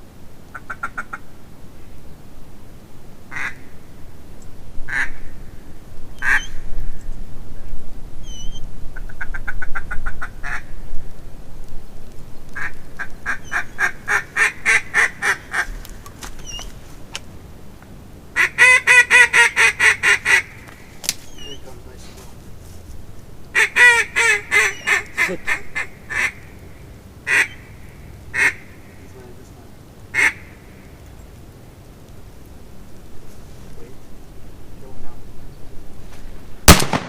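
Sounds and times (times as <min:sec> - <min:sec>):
duck quacking: 0:13.3 - 0:15.7, 0:18.4 - 0:20.6, 0:23.6 - 0:26.5, 0:27.3 - 0:29.1, 0:30.2 - 0:30.6.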